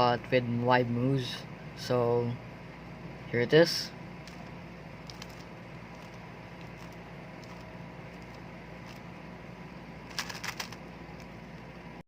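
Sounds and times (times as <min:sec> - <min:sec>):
background hum: 0:00.0 - 0:12.0
plastic puzzle cube clicks: 0:10.1 - 0:10.8.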